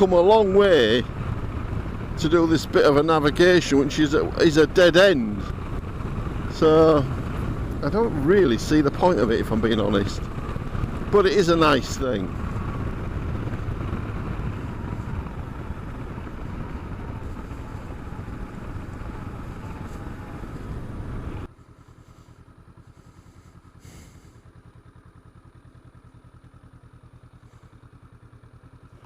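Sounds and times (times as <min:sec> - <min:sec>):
motorcycle engine: 0:00.0 - 0:29.0
wind noise: 0:04.2 - 0:21.5.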